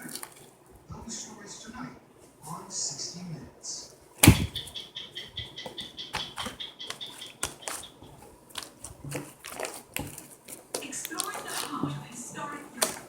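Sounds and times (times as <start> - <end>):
sharp thump: 4.2 - 4.6.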